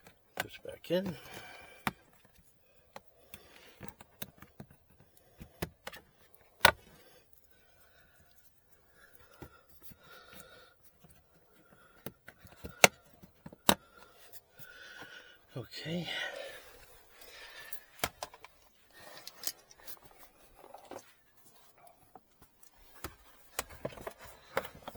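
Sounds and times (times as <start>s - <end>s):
plastic plugs clicking: 12.0s - 13.8s
plastic handling: 16.7s - 24.9s.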